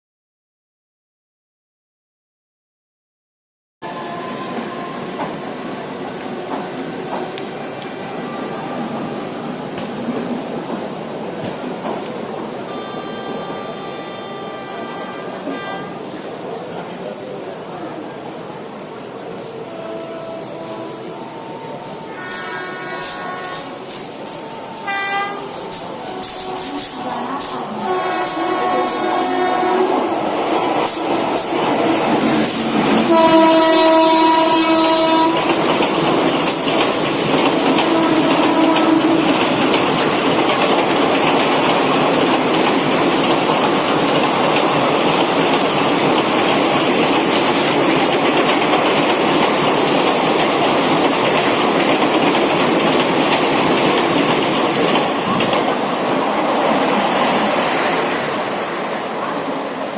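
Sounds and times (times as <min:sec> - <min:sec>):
locomotive horn blast: 0:03.8 - 0:05.6, 0:08.0 - 0:09.5, 0:12.6 - 0:16.3, 0:19.6 - 0:31.0, 0:31.8 - 0:35.7, 0:37.7 - 0:39.6
train wheels rumbling over track: 0:03.8 - 0:59.9.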